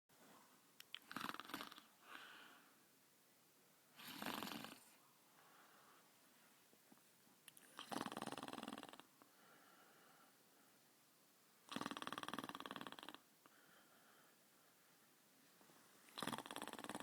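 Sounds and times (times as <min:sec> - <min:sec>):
dog snoring: 0:01.1 - 0:01.9, 0:04.0 - 0:04.9, 0:07.8 - 0:09.1, 0:11.7 - 0:13.2, 0:16.2 - 0:17.0.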